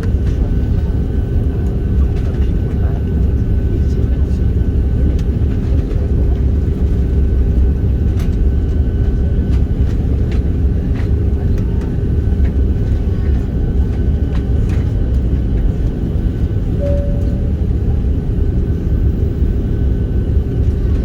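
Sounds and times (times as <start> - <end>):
aircraft engines roaring: 0.0 - 21.0
constant hum: 0.0 - 21.0
short high tone: 16.8 - 17.8.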